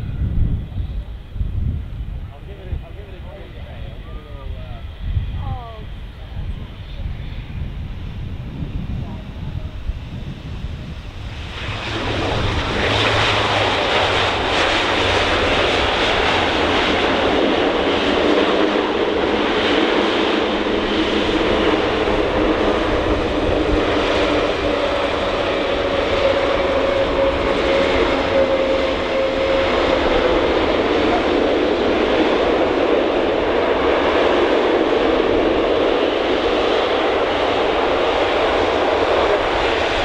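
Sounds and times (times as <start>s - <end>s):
turboprop engines droning: 0.0s - 40.0s.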